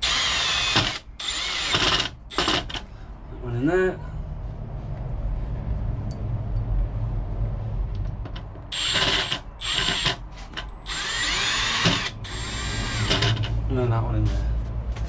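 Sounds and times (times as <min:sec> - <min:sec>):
cordless drill driving screws: 0:00.0 - 0:02.8, 0:08.7 - 0:13.5
low rumble: 0:02.8 - 0:15.0.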